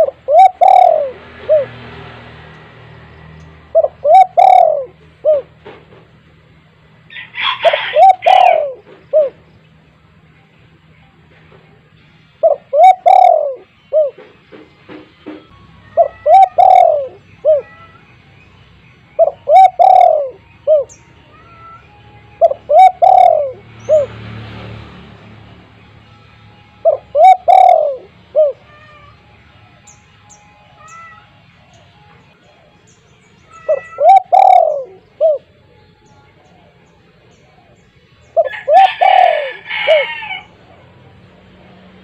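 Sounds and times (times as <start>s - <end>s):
dove cooing: 0.0s - 1.9s, 3.7s - 6.0s, 7.1s - 9.5s, 12.4s - 14.4s, 15.9s - 18.0s, 19.2s - 24.1s, 26.8s - 29.2s, 33.5s - 35.6s, 37.3s - 41.1s
small birds chirping: 10.7s - 24.4s, 29.8s - 38.6s.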